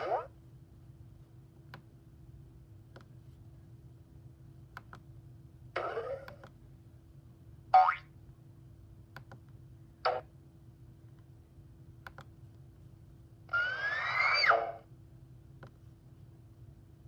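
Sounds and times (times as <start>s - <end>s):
rising whistle over noisy rush: 13.5s - 14.8s.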